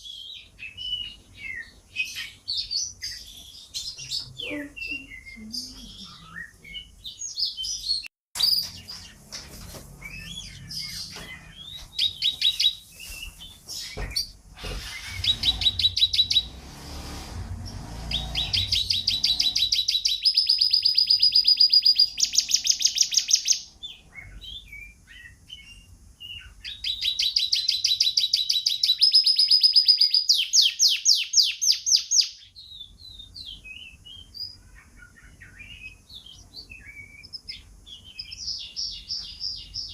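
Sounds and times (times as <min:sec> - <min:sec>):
canary trilling: 0:00.0 - 0:09.3, 0:09.9 - 0:39.9.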